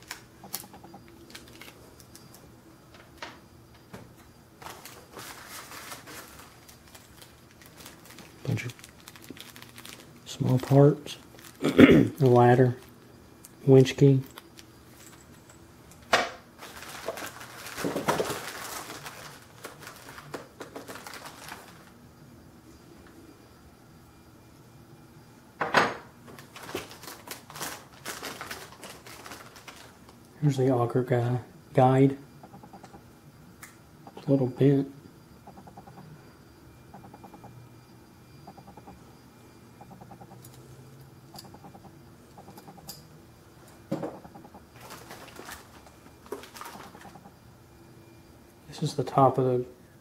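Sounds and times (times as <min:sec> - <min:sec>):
plastic packaging crinkling: 0:00.0 - 0:02.4, 0:04.6 - 0:13.1, 0:16.6 - 0:22.0, 0:26.3 - 0:30.2, 0:44.7 - 0:47.2.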